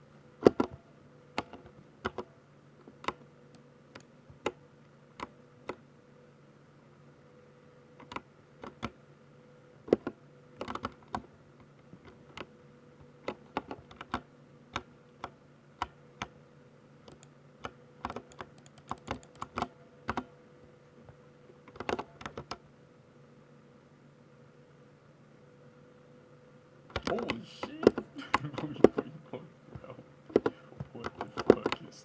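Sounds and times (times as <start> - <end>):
faint steady hum: 0.0 - 32.0
mechanical keyboard typing: 0.4 - 3.3, 5.2 - 5.8, 8.0 - 9.0, 9.9 - 11.3, 13.2 - 16.4, 17.0 - 20.4, 21.7 - 22.6, 26.9 - 29.2, 30.3 - 32.0.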